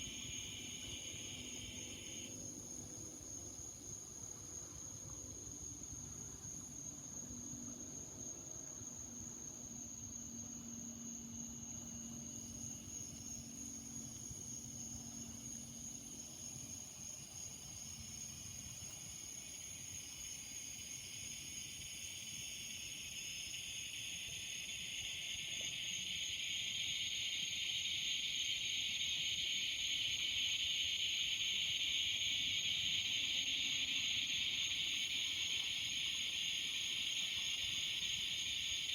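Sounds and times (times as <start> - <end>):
high-pitched insect tone: 0.0 - 2.5, 9.9 - 38.9
cicadas buzzing: 0.0 - 38.9.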